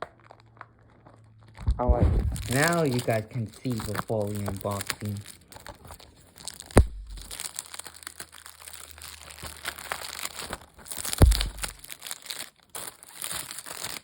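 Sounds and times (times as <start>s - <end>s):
plastic wrap crinkling and tearing: 0.0s - 14.0s
heavy handling thumps: 1.6s - 2.6s, 6.8s - 7.3s, 11.2s - 11.8s.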